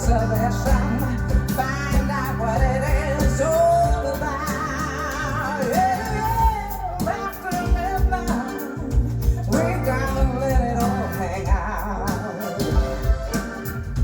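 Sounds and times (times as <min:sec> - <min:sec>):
bass: 0:00.0 - 0:14.0
person singing: 0:00.0 - 0:14.0
steady drum beat: 0:00.0 - 0:14.0.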